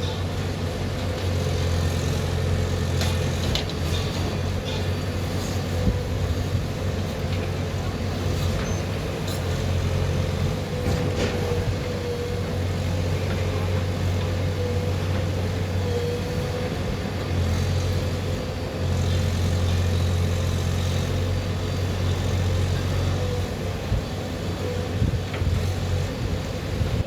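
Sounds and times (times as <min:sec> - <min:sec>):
diesel engine humming: 0:00.0 - 0:27.0.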